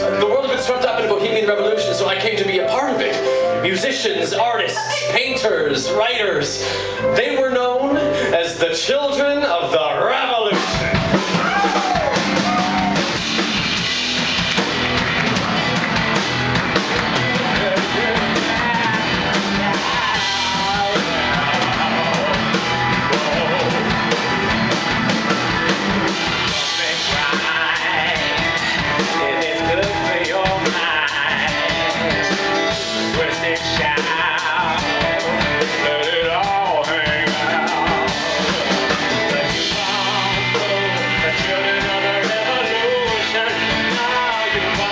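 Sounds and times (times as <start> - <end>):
rock band playing: 0.0 - 44.9
person singing: 16.7 - 44.9.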